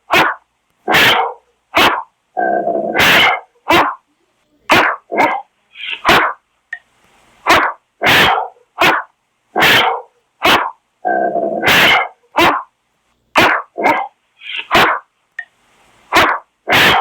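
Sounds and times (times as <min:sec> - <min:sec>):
dog barking deeply: 0:00.0 - 0:04.0, 0:04.7 - 0:06.4, 0:07.4 - 0:12.7, 0:13.4 - 0:15.1, 0:16.1 - 0:17.0.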